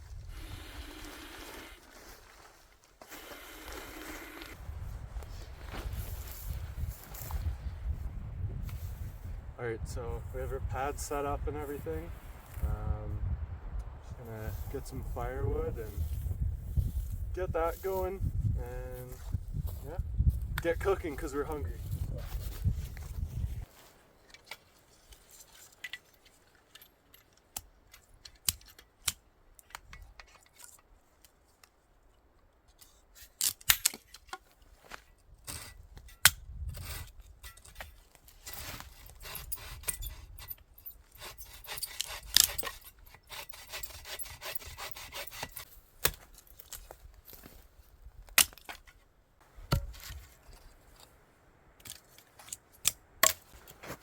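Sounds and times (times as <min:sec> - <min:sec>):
hand saw cutting wood: 0:00.3 - 0:01.9, 0:03.0 - 0:04.6, 0:38.5 - 0:45.7
sticks snapping and knocking: 0:48.3 - 0:49.0.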